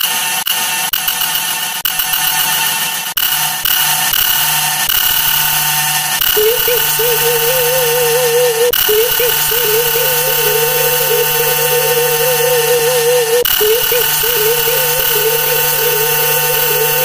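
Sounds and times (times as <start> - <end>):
stacked voice buzzing drone: 4.0 - 17.0.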